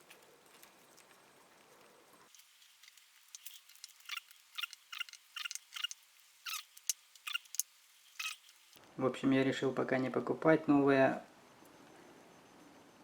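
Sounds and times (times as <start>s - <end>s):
small metal parts clicking: 2.3s - 8.8s.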